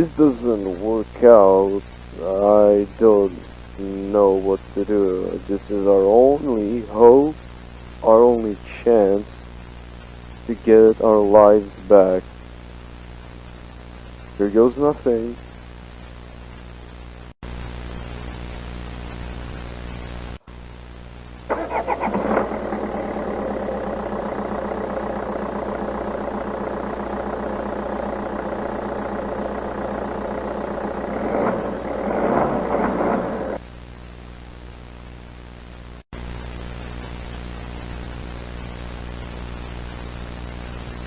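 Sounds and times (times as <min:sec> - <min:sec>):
static hiss: 0:00.0 - 0:41.0
engine cranking and running: 0:21.5 - 0:33.6.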